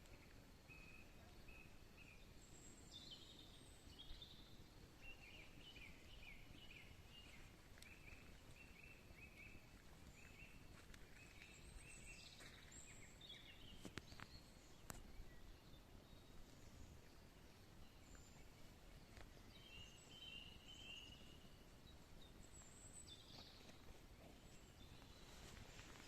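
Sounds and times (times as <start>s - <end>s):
natural background: 0.0s - 26.0s
faint clicks: 13.8s - 15.1s.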